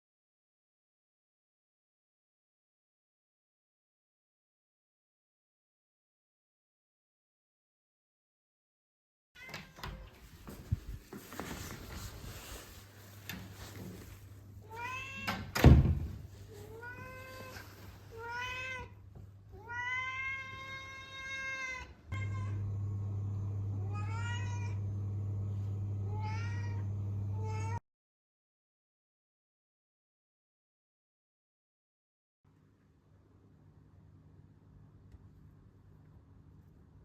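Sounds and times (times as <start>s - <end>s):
cat meowing: 14.6s - 15.4s, 16.5s - 22.6s, 23.8s - 24.8s, 26.1s - 27.8s
loud thump: 15.6s - 16.2s.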